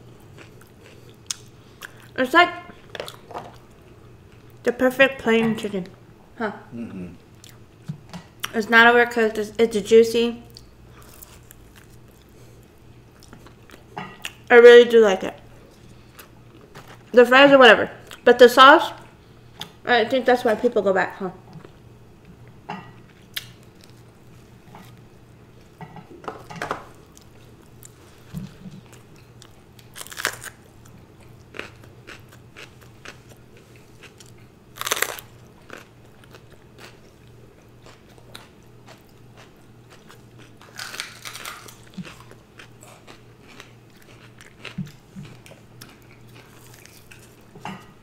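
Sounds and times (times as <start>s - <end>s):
faint low hum: 0.0s - 48.0s
person chewing food: 0.2s - 2.2s, 6.8s - 8.5s, 10.5s - 14.5s, 15.6s - 17.1s, 26.9s - 48.0s
crunchy bites: 29.4s - 30.6s, 34.0s - 37.0s, 40.1s - 47.3s.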